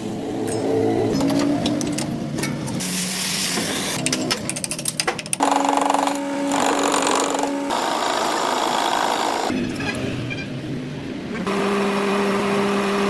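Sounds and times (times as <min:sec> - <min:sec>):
machine humming and hissing: 0:11.5 - 0:13.0.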